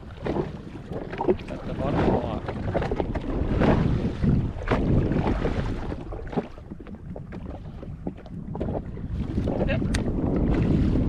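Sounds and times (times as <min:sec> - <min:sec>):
wind rumbling on microphone: 0:00.0 - 0:11.0.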